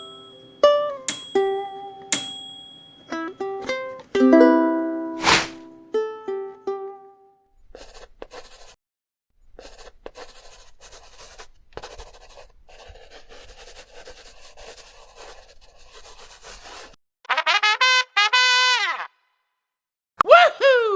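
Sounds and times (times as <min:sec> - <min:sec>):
dry scratching and rubbing: 0:05.2 - 0:05.6.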